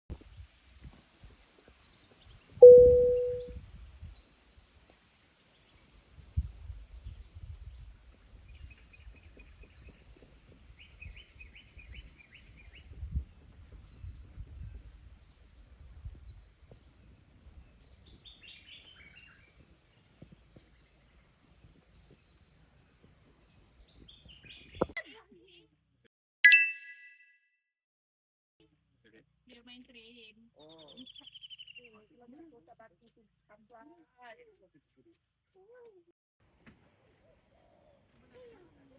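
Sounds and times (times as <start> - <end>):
loud low steady tone: 2.6 - 3.5.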